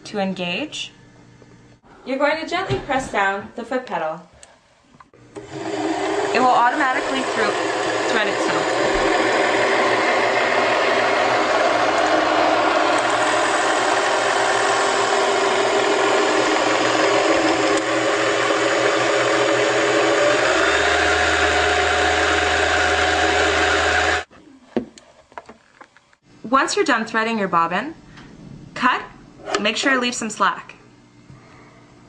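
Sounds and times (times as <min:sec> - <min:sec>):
sewing machine whirring: 0:05.4 - 0:24.3.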